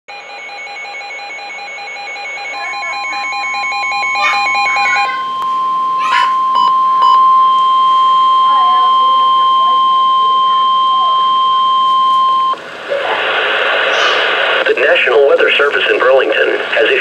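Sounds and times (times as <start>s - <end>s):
rapid pulsing alarm beeps: 0.1s - 12.6s
steady warning alarm tone: 0.1s - 12.6s.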